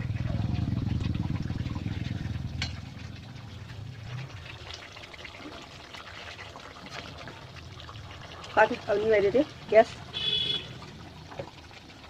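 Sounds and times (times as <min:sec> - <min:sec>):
low rumble: 0:00.0 - 0:04.7
chicken sizzling and bubbling: 0:00.0 - 0:12.0.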